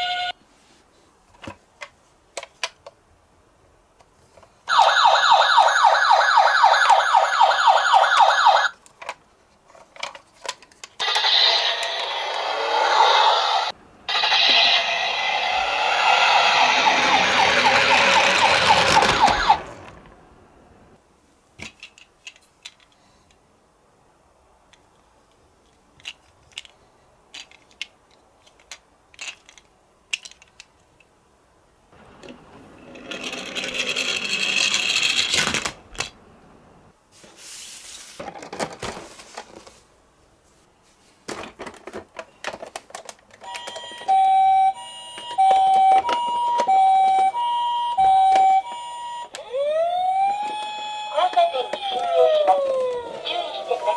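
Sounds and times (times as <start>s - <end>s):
two-tone electronic siren: 4.7s - 8.7s, 12.8s - 20.0s, 43.5s - 53.9s
toy car rolling rattle: 9.8s - 20.0s, 27.3s - 30.6s, 32.2s - 36.1s.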